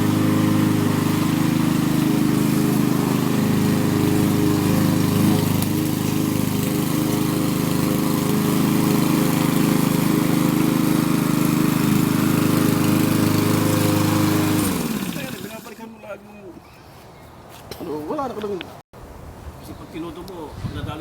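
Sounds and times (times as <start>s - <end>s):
lawn mower engine cutting grass: 0.0s - 15.9s.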